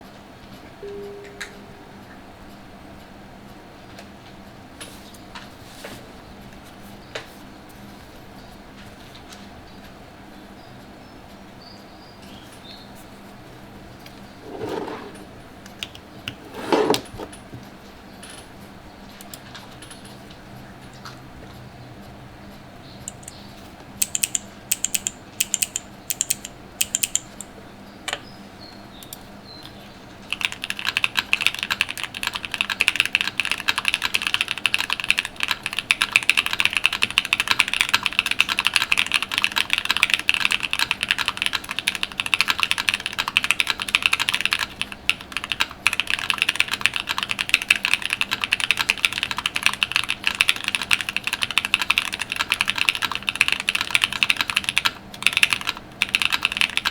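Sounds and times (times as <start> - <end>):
mechanical keyboard typing: 23.1 - 23.4, 24.0 - 27.5, 30.3 - 56.9.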